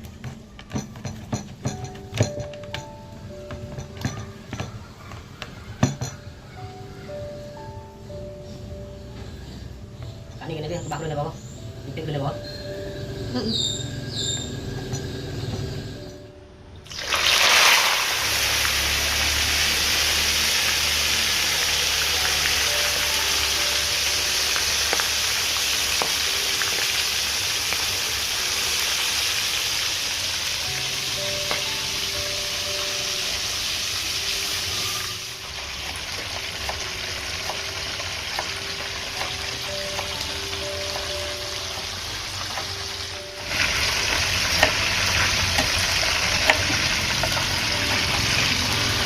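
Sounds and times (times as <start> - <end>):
soft background music: 0.0 - 49.0
fish sizzling in hot oil: 16.8 - 49.0.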